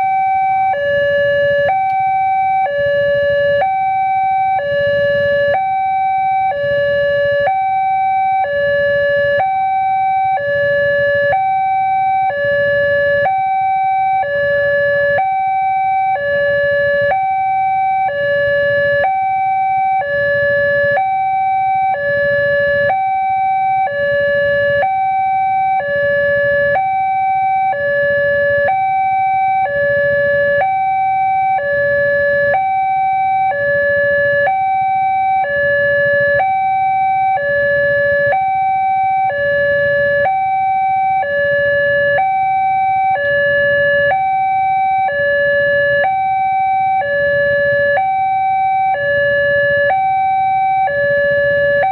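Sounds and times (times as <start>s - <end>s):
two-tone level-crossing siren: 0.0s - 51.9s.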